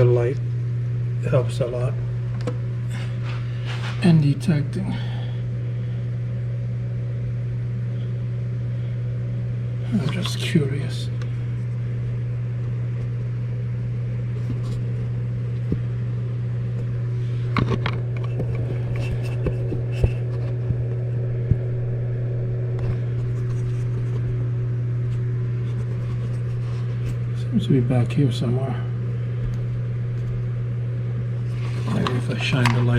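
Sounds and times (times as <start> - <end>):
air pump humming: 0.0 - 32.9.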